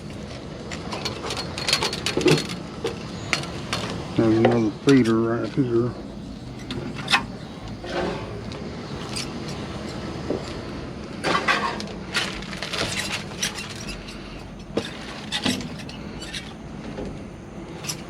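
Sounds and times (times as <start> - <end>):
rummaging rustles and knocks: 11.2 - 14.0.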